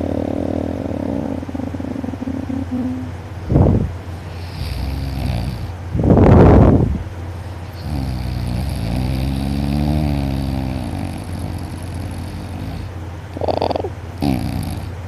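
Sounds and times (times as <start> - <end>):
person snoring: 0.0 - 2.2, 4.2 - 5.8, 7.7 - 14.9.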